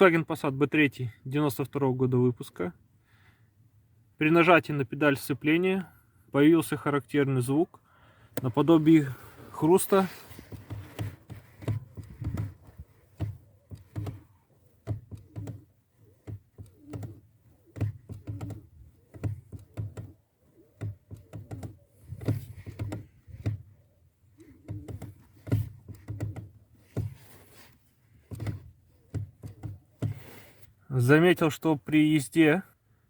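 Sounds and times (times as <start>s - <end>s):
clutch pedal crunching and creaking: 8.3s - 31.4s.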